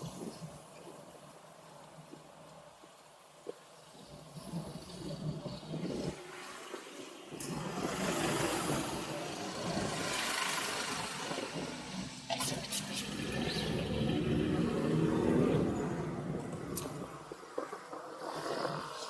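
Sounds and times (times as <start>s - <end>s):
road traffic: 7.2s - 19.0s.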